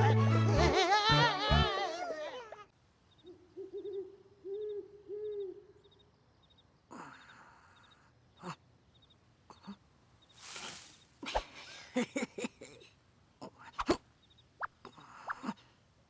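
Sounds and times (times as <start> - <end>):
crickets chirping: 3.0 - 11.2
owl hooting: 3.2 - 6.0.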